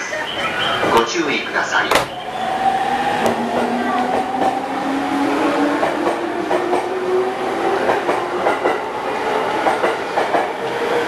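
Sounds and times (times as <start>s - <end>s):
train wheels clicking over rail joints: 5.8s - 7.0s, 7.8s - 8.9s.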